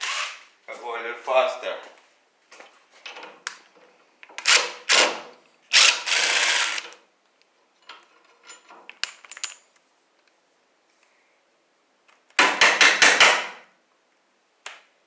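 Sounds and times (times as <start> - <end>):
impact driver rattling bursts: 4.4 - 6.9.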